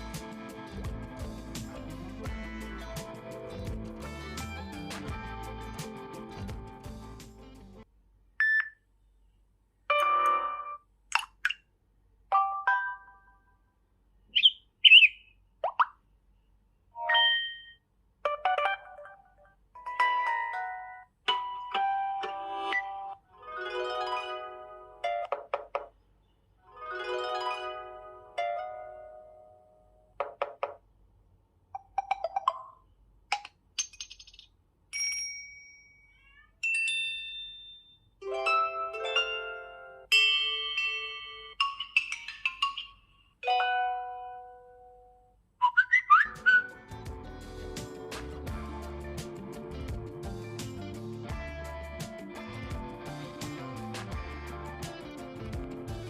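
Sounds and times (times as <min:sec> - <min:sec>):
two-tone beep: 0:17.0 - 0:17.8
plucked notes: 0:18.2 - 0:25.5, 0:46.3 - 0:56.0.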